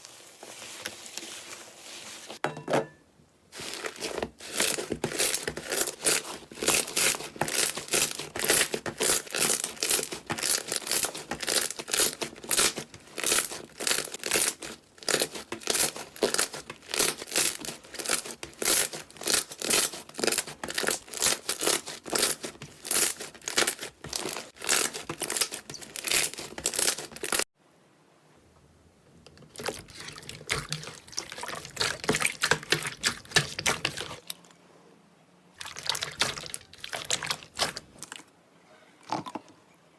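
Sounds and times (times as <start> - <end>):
slime crackling and popping: 3.7 - 27.5.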